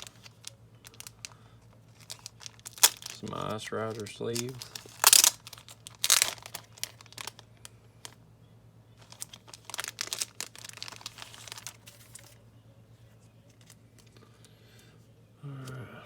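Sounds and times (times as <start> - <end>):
plastic bag crinkling: 0.0 - 8.2, 9.0 - 12.4
faint low hum: 0.0 - 16.0.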